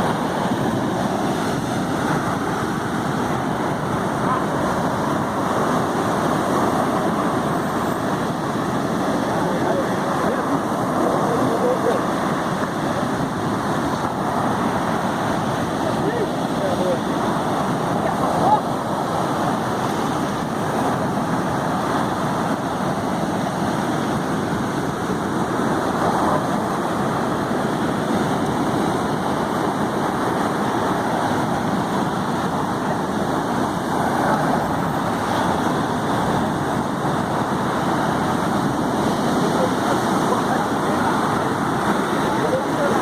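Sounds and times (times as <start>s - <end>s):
ocean waves breaking: 0.0s - 43.0s.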